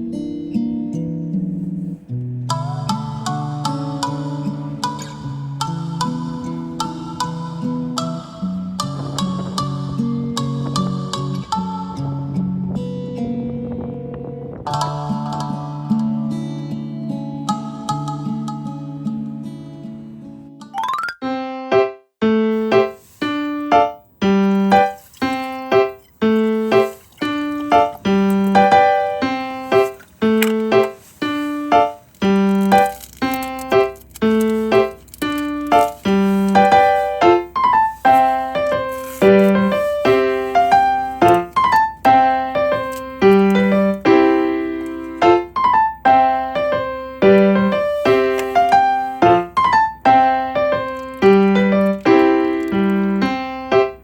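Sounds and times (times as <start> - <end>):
gentle piano melody: 20.6 - 54.0.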